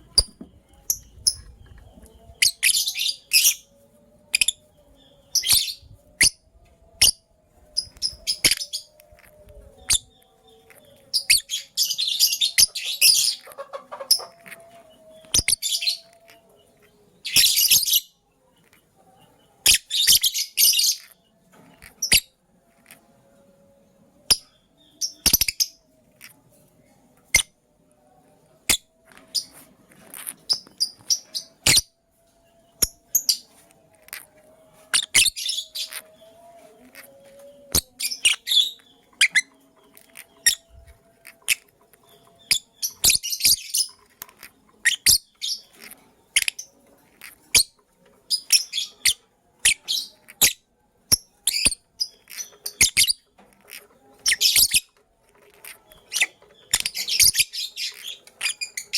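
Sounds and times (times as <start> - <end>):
lovebirds chirping: 0.0 - 58.9.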